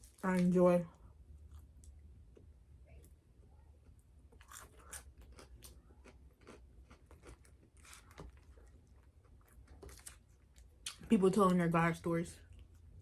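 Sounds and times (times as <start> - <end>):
person chewing crispy food: 3.8 - 11.0.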